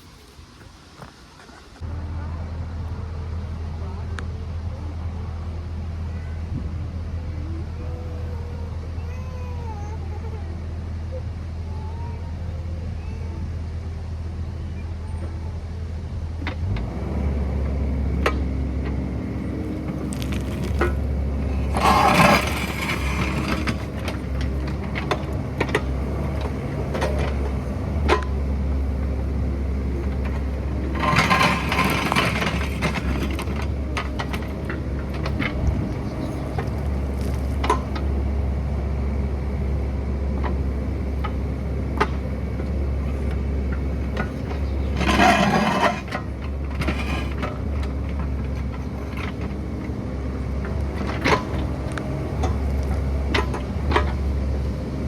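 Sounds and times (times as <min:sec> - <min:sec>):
excavator diesel engine drone: 0:00.0 - 0:55.0
rushes of noise: 0:19.0 - 0:28.2.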